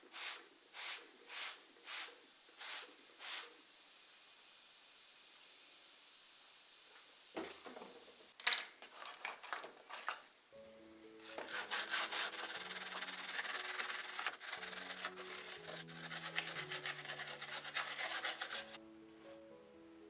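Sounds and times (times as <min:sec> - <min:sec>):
soft background music: 0:10.4 - 0:20.0
rapid abrasive rubbing: 0:11.2 - 0:18.8.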